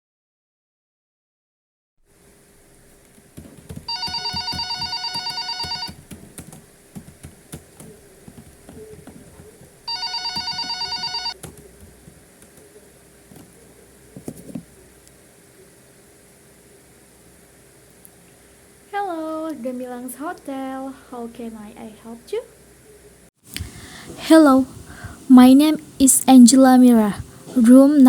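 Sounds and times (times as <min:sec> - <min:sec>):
telephone electronic warbling ring: 0:03.9 - 0:06.0, 0:09.9 - 0:11.4.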